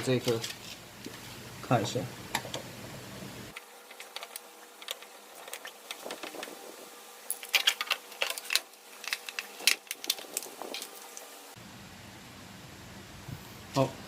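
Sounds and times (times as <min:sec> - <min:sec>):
clicks and knocks of parts handled: 0:03.5 - 0:06.6, 0:07.3 - 0:11.3.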